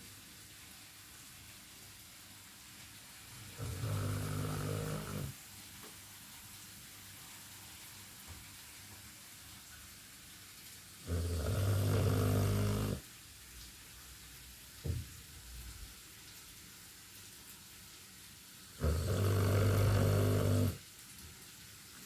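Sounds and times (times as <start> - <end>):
dog snoring: 3.5 - 5.4, 11.0 - 13.0, 18.8 - 20.8.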